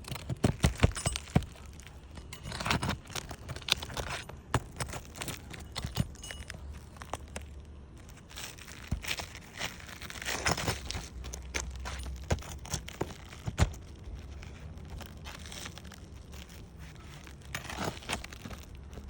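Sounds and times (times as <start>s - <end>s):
tool tapping on roof shingles: 0.0s - 6.6s
tool scraping roof shingles: 0.0s - 7.5s, 8.1s - 19.0s.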